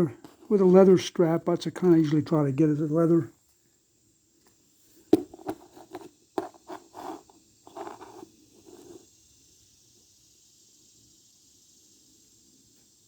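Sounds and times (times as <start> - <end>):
scraping and rustling: 5.2 - 9.0.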